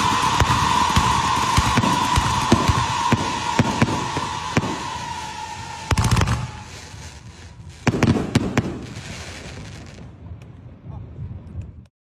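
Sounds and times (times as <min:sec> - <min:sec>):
high firework whistle: 0:00.0 - 0:09.4
fireworks cracks and bangs: 0:00.0 - 0:10.5.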